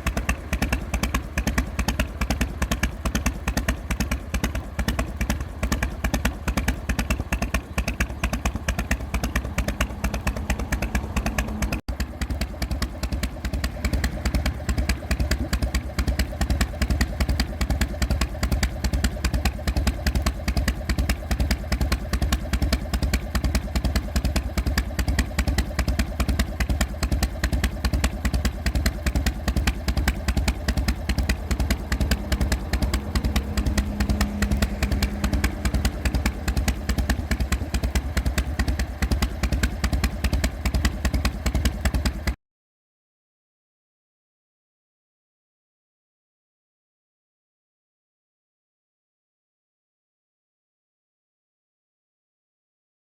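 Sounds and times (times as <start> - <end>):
motorcycle engine idling: 0.0 - 42.4.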